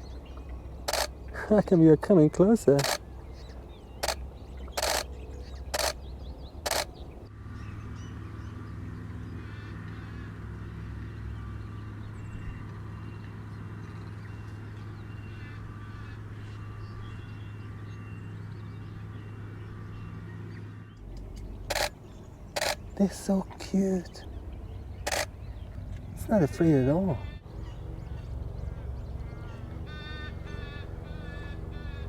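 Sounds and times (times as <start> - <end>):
steady low hum: 0.0 - 1.8, 2.4 - 9.4
short bird calls: 0.8 - 1.4, 2.7 - 7.1, 21.4 - 23.1, 24.0 - 25.6
camera shutter clicks: 0.9 - 1.1, 2.8 - 3.0, 4.0 - 5.1, 5.8 - 6.0, 6.7 - 7.0, 21.7 - 22.0, 22.6 - 22.8, 25.1 - 25.3.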